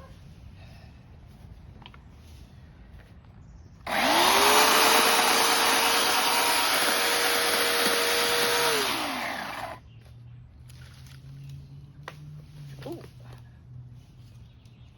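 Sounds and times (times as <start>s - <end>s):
chainsaw motor running: 3.9s - 9.8s.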